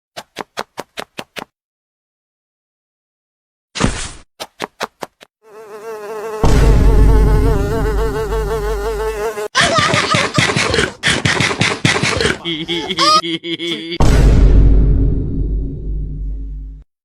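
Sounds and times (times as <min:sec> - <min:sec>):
loud insect buzzing: 0:05.4 - 0:09.6.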